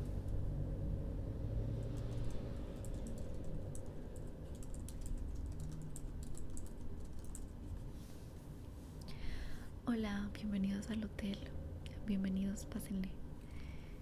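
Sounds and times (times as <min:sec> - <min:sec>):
low steady hum: 0:00.0 - 0:14.0
computer keyboard typing: 0:01.8 - 0:07.5.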